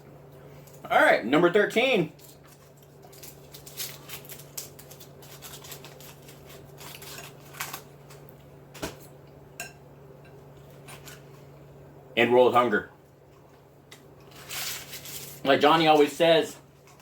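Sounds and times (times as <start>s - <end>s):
steady low hum: 0.0s - 17.0s
wrapper rustling and clicks: 2.2s - 8.2s, 14.3s - 15.5s.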